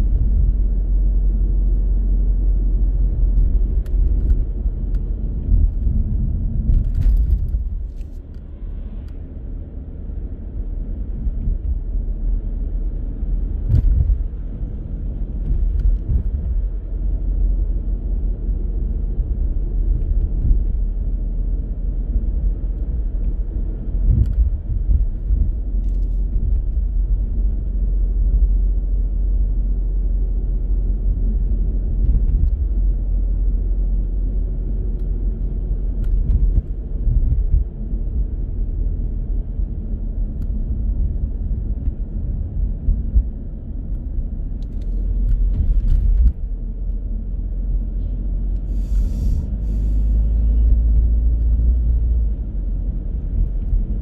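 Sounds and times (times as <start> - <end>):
car road and engine rumble: 0.0 - 54.0.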